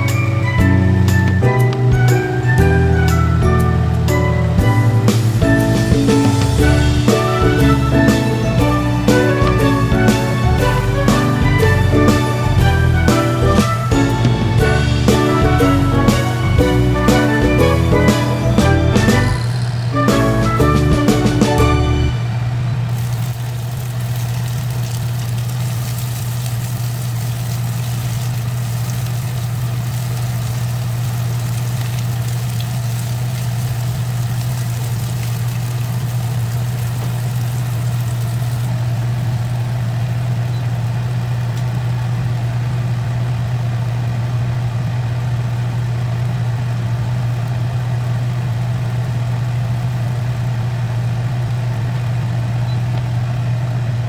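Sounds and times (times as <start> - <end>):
even noise: 0.0 - 44.8
low motor hum: 0.0 - 54.0.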